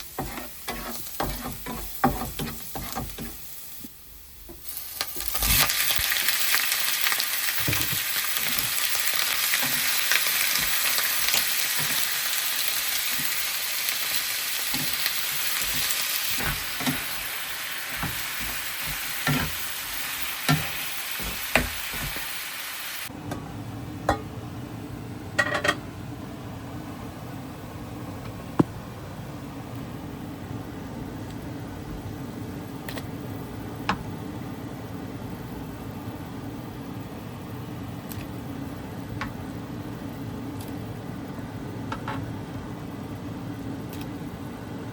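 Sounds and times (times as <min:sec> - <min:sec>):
chicken sizzling in a pan: 0:00.0 - 0:23.1.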